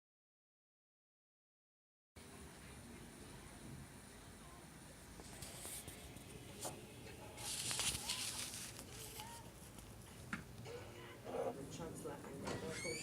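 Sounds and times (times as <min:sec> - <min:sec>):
rustling: 0:07.4 - 0:10.2.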